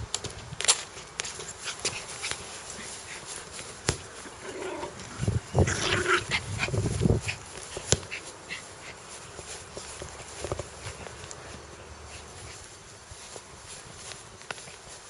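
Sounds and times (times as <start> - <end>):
dog growling: 4.2 - 6.8.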